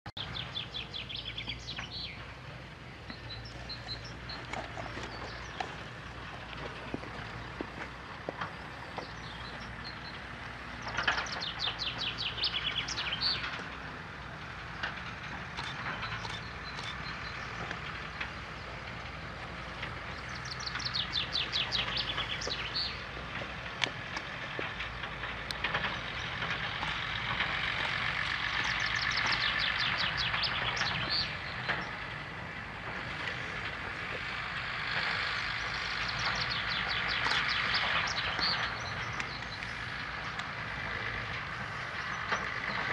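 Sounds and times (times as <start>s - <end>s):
diesel engine humming: 0.1s - 42.9s
songbird trilling: 20.1s - 23.0s, 28.6s - 31.7s.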